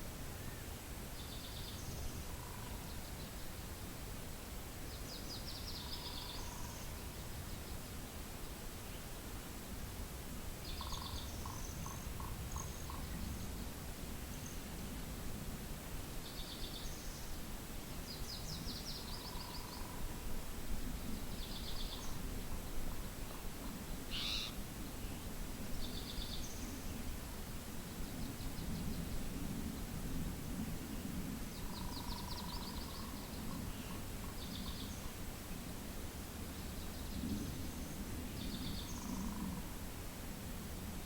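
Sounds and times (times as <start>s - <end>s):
small birds buzzy calls: 24.1s - 24.6s.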